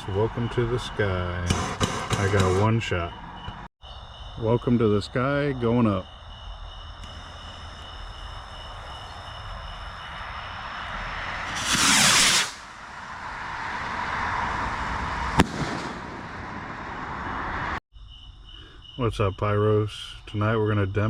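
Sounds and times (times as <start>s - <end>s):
firework bang: 1.5s - 2.7s, 11.5s - 12.7s, 15.2s - 17.0s
rocket launching with a rush: 11.3s - 12.8s, 15.0s - 17.1s
firework rocket hissing: 11.4s - 12.8s, 15.4s - 16.3s.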